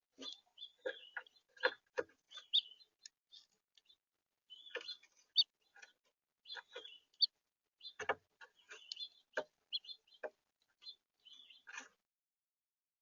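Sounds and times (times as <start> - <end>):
finches chirping: 0.1 - 11.8.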